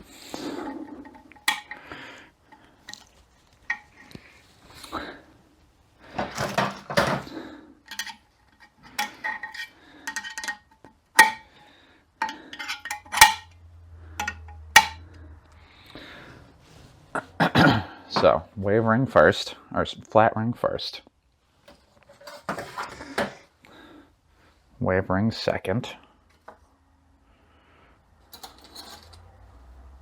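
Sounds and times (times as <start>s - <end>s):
metal parts clinking and scraping: 0.0s - 2.0s, 2.9s - 4.2s, 7.9s - 11.5s, 12.2s - 15.0s, 28.3s - 29.3s.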